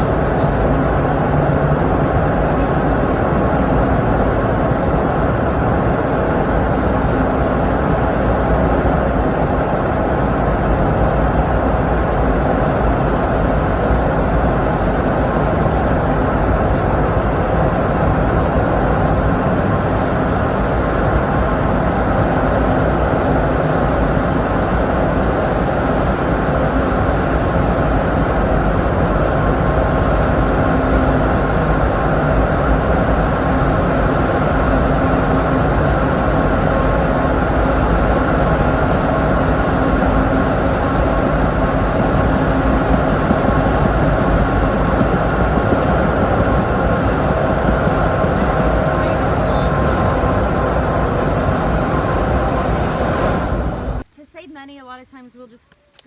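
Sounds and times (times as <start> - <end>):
car rumble from inside cabin: 38.2 - 53.1.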